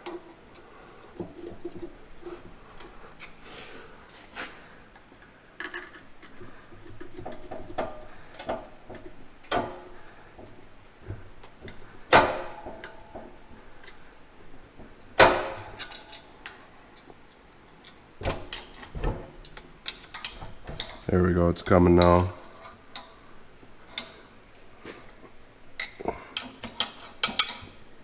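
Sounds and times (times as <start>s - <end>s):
metal-on-metal knocks and clanks: 6.9s - 13.4s, 14.8s - 16.2s, 18.2s - 21.1s.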